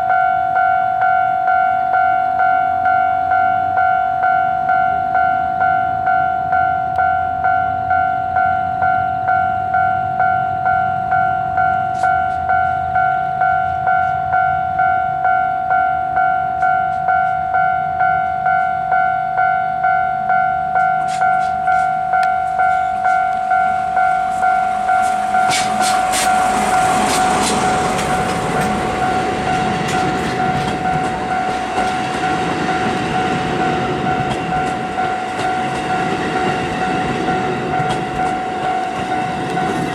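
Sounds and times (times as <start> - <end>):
level-crossing alarm ringing: 0.0 - 39.9
train wheels clacking over rails: 20.8 - 39.9.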